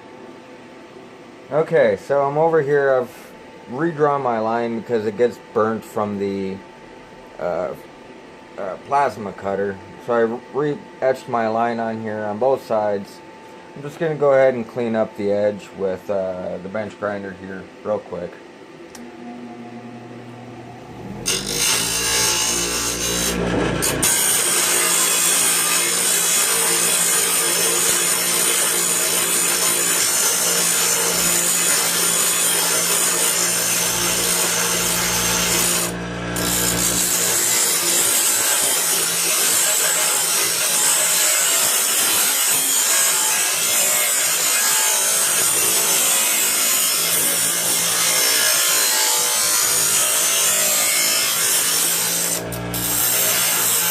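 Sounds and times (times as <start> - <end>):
bench grinder grinding metal: 19.0 - 53.9.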